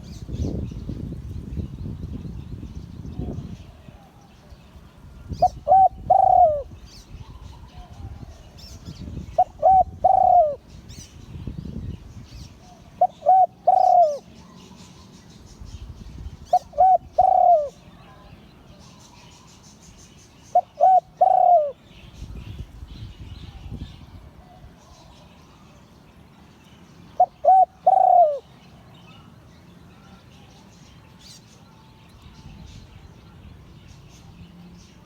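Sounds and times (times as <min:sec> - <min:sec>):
small birds chirping: 0:00.0 - 0:35.0
dove cooing: 0:05.4 - 0:10.7, 0:12.6 - 0:14.9, 0:16.5 - 0:18.1, 0:20.5 - 0:21.9, 0:27.2 - 0:28.6.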